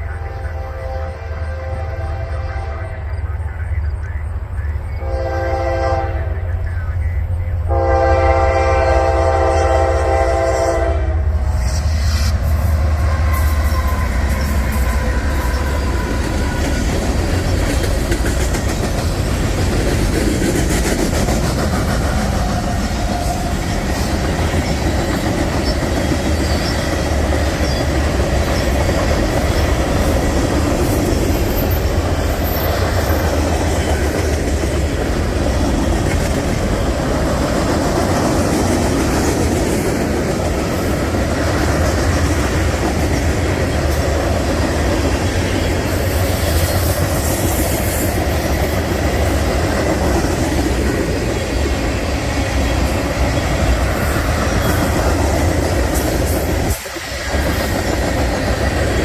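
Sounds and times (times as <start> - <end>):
diesel locomotive horn blasts: 0.0 - 3.3, 5.0 - 6.6, 7.7 - 16.8
train engine rumble: 0.0 - 59.0
wheels clacking over rails: 13.5 - 59.0.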